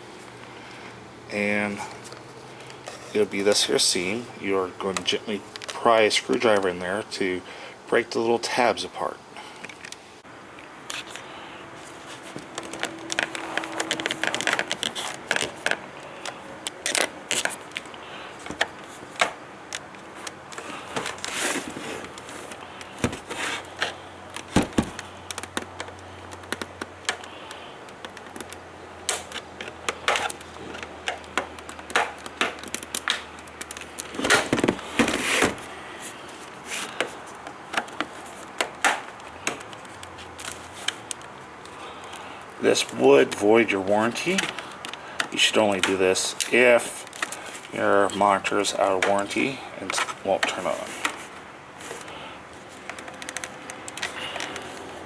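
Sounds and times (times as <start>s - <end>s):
plastic tabs snapping: 12.4s - 21.3s, 52.8s - 54.9s.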